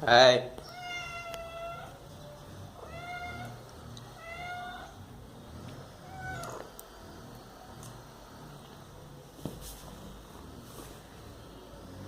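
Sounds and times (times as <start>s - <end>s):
cat meowing: 0.6s - 2.0s, 2.8s - 5.0s, 6.0s - 6.7s.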